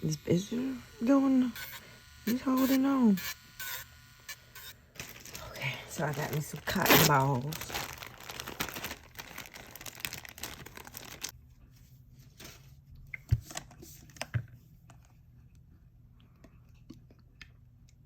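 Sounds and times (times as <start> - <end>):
plastic packaging crinkling: 4.6 - 11.4.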